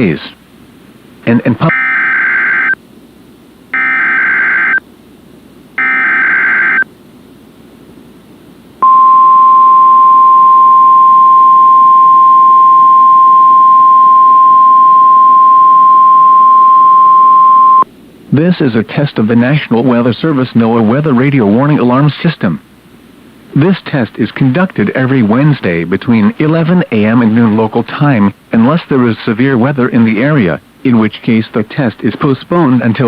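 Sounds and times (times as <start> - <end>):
steady warning alarm tone: 3.8 - 4.8, 5.8 - 6.8, 8.8 - 17.8.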